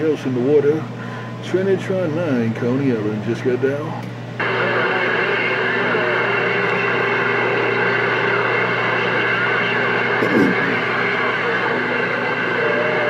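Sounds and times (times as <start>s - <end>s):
faint garbled radio voice: 4.4s - 13.0s
radio static with hum and whine: 4.4s - 13.0s.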